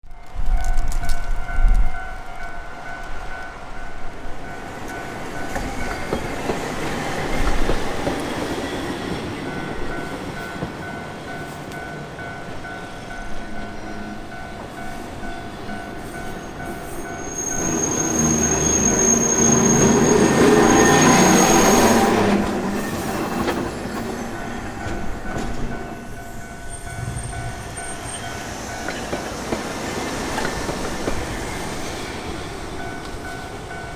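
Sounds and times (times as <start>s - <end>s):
tram wheels rumbling on rail: 0.0s - 33.9s
railroad crossing bell ringing: 0.1s - 33.9s
high wheel squeal: 12.8s - 32.8s.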